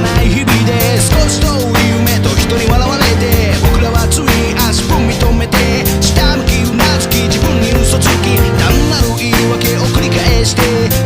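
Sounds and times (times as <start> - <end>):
pop music with drums and bass: 0.0 - 11.0.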